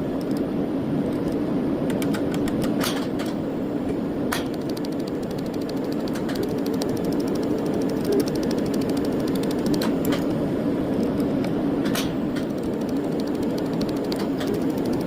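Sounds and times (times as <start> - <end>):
sharp clicks: 0.2 - 0.4, 1.1 - 3.4, 4.3 - 10.4, 11.0 - 15.0
machine humming: 3.4 - 15.0
fine rapid ticking: 4.4 - 10.4, 12.0 - 15.0.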